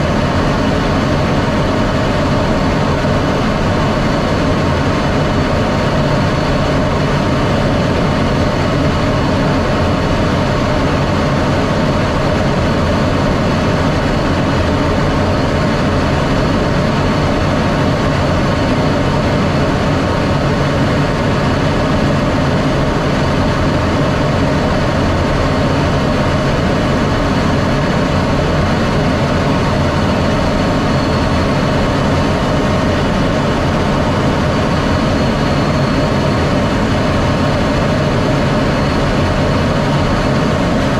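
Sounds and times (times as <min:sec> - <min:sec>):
fighter jet roar: 0:00.0 - 0:40.9.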